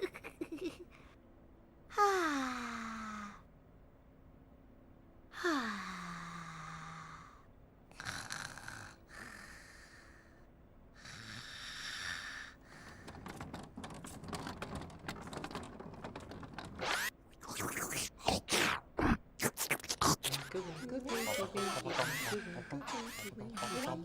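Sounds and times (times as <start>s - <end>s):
breathy snores: 6.1s - 10.2s, 11.0s - 12.6s.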